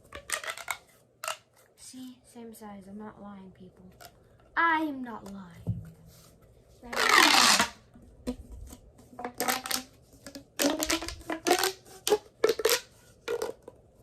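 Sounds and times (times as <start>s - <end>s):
plastic pop tubes popping: 0.0s - 1.6s, 6.9s - 13.8s.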